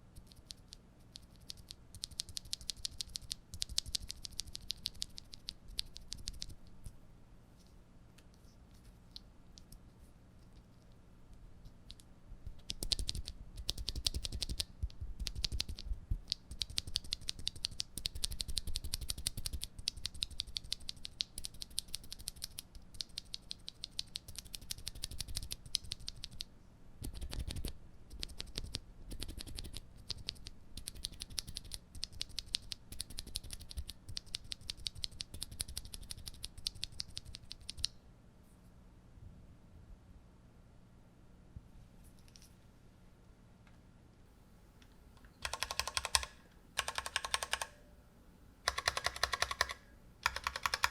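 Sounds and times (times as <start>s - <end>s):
mechanical keyboard typing: 0.2s - 6.6s, 12.6s - 37.9s, 45.4s - 47.8s, 48.7s - 50.9s.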